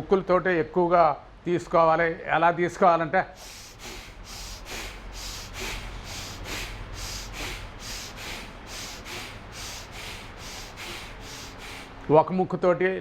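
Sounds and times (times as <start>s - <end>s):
man breathing forcefully through nose: 3.3s - 12.1s.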